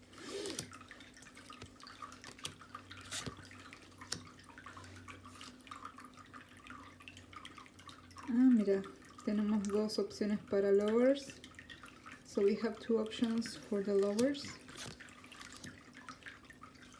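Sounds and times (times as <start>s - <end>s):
cards clicking and sliding: 0.1s - 0.8s, 1.5s - 4.3s, 13.4s - 15.7s.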